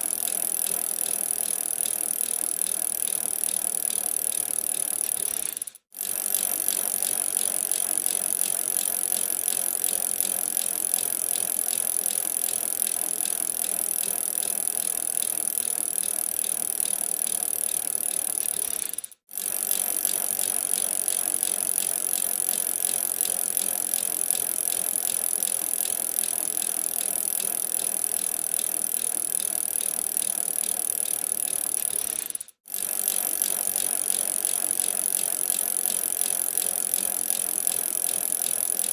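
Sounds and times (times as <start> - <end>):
bicycle drivetrain rattle and whirr: 0.0 - 38.9.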